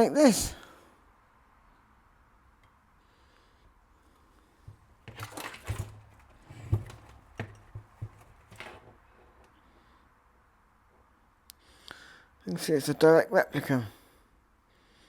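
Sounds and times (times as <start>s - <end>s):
thump: 4.7s - 9.0s.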